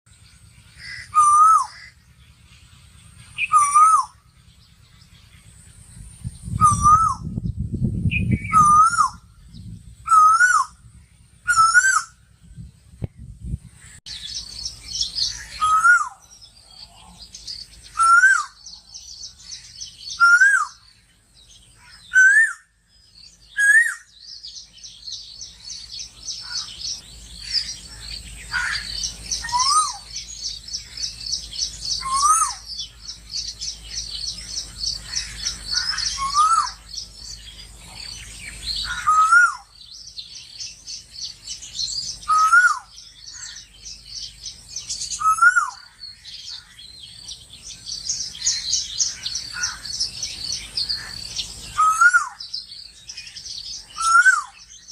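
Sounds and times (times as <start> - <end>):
bird call rising and dropping: 42.2 - 43.6, 51.7 - 52.4.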